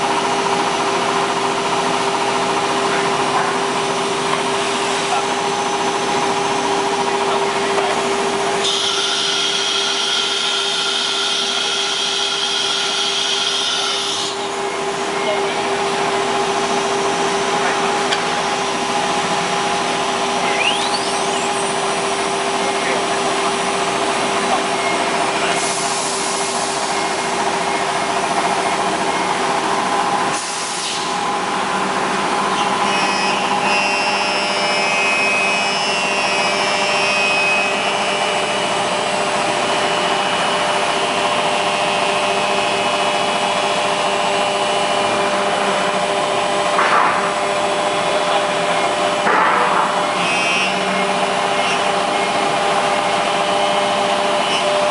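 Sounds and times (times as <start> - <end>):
router grinding cutting noise: 7.8 - 14.5.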